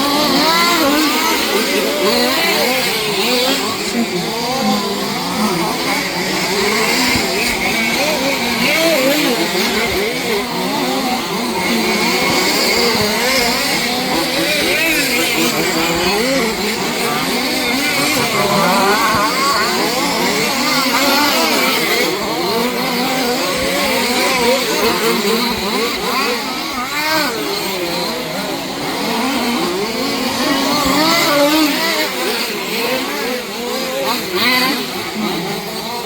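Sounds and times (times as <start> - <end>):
rc car engines revving: 0.0 - 36.0.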